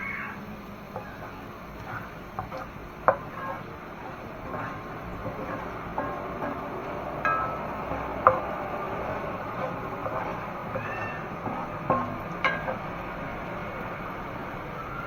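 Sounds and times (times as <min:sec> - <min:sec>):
cat meowing: 0:00.0 - 0:00.4, 0:10.7 - 0:11.4
food frying in oil: 0:00.0 - 0:15.0
spatula clinking against pan: 0:01.0 - 0:14.3.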